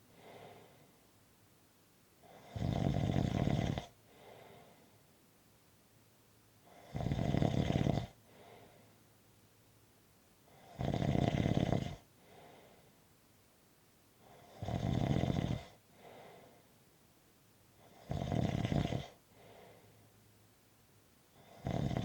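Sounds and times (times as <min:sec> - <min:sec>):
soft breath: 0:00.0 - 0:01.1, 0:04.0 - 0:05.1, 0:08.2 - 0:09.2, 0:12.1 - 0:13.2, 0:15.7 - 0:16.8, 0:19.1 - 0:20.3
loud snoring: 0:02.2 - 0:04.0, 0:06.7 - 0:08.2, 0:10.5 - 0:12.0, 0:14.3 - 0:15.8, 0:17.8 - 0:19.2, 0:21.4 - 0:22.0.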